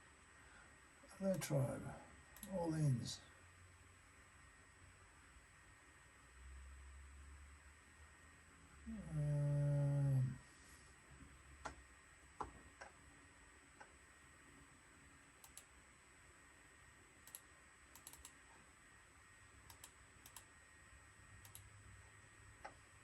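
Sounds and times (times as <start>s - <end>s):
faint control clicks: 2.3s - 2.6s, 15.4s - 15.7s, 17.2s - 18.4s, 19.7s - 20.5s, 21.4s - 21.7s.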